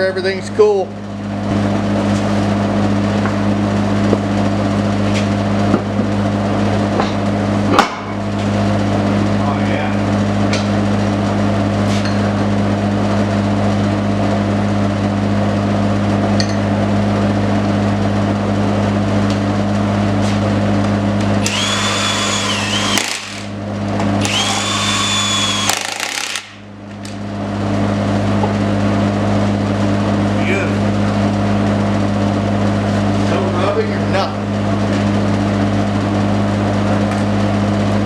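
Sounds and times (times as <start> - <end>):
power tool whining: 21.4 - 23.6, 24.2 - 26.6.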